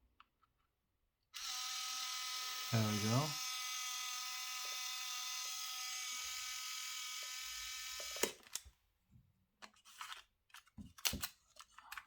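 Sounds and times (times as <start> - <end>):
camera motor whine: 1.4 - 8.4.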